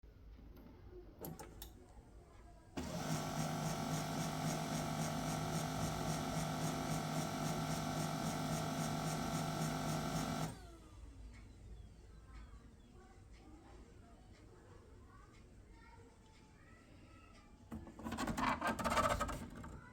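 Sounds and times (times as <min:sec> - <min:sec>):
scanner mechanism humming: 0:02.8 - 0:10.9.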